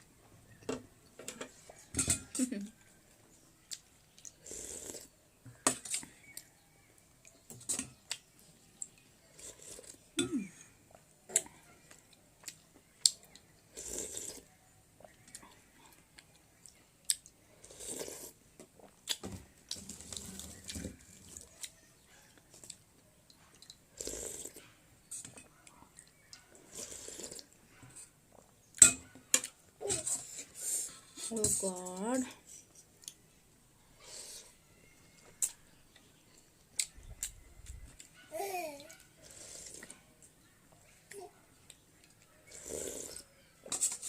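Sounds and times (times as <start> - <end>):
mouth sounds of eating: 3.6 - 5.2, 7.2 - 28.6, 35.2 - 44.0.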